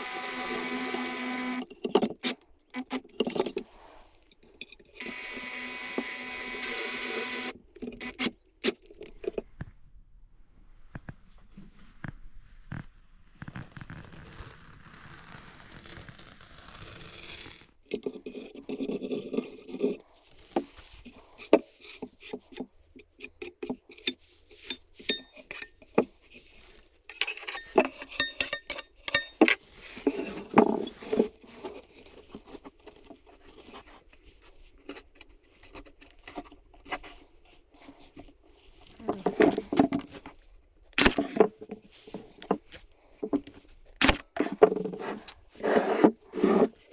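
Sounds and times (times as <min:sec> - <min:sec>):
hard objects scraping and knocking: 0:10.9 - 0:34.3, 0:34.9 - 0:40.4, 0:41.0 - 0:46.9.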